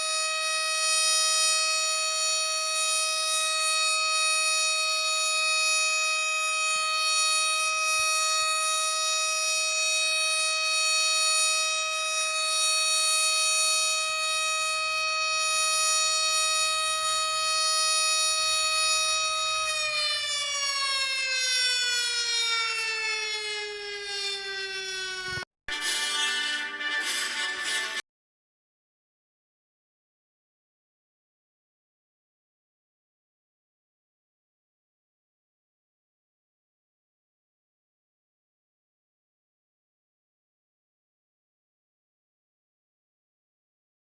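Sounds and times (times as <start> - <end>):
siren wailing: 0.0 - 26.2.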